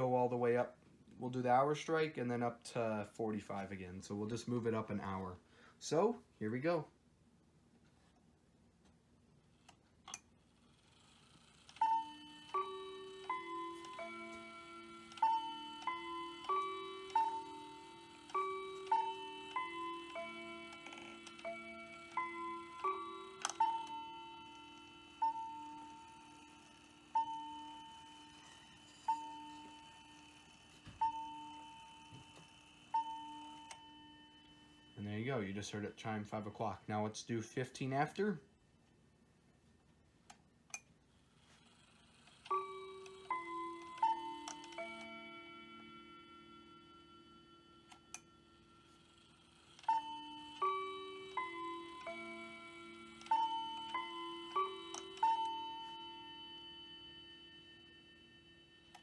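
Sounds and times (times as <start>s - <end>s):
mantel clock striking: 11.8s - 35.4s, 42.4s - 59.0s.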